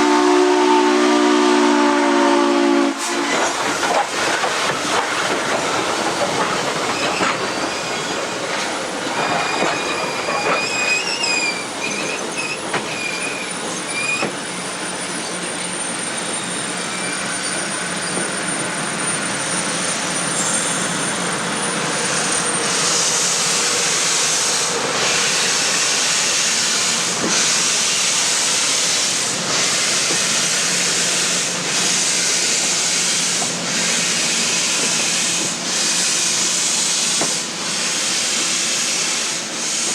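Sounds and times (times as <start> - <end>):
train rolling slowly: 0.1 - 39.9
train wheel squeal: 5.5 - 39.9
loud steady hiss: 22.0 - 39.9.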